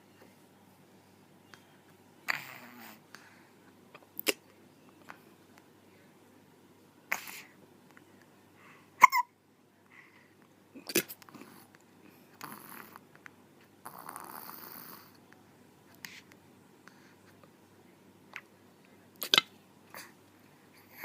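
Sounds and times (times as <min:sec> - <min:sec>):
hiccups with voiced squeak: 0:09.0 - 0:09.3.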